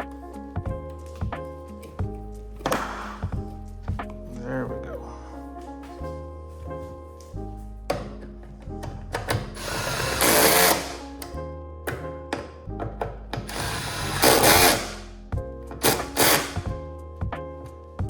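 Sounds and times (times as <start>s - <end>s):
background music with steady beat: 0.0s - 18.0s
small power tool running: 9.6s - 11.0s, 13.5s - 15.0s, 15.8s - 16.6s.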